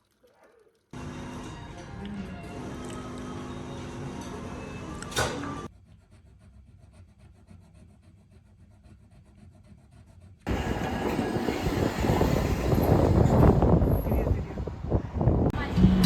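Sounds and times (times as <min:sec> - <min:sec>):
vehicle rumbling: 0:10.5 - 0:16.0
background music: 0:15.6 - 0:16.0.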